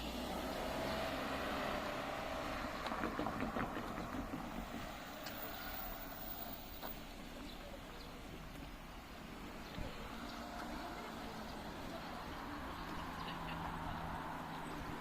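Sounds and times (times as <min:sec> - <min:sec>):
vehicle passing: 0:00.0 - 0:06.6, 0:09.9 - 0:15.0.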